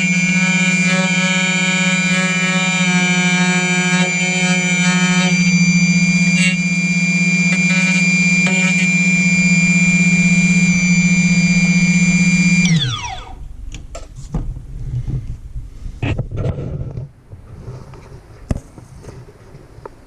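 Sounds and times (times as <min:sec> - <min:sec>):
key-cutting machine whining: 0:00.0 - 0:13.4
motor winding down: 0:00.0 - 0:13.4.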